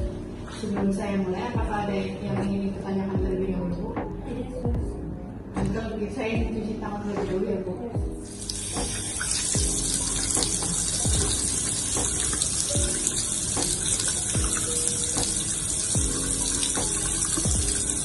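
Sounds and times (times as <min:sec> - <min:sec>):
background music with beat: 0:00.0 - 0:01.0, 0:01.6 - 0:18.0
tap water running into sink: 0:08.2 - 0:18.0.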